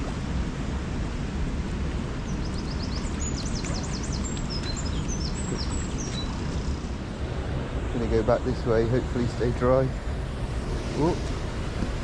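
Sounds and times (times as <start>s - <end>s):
songbird singing: 2.2s - 7.0s
waterfall rushing: 6.4s - 12.0s.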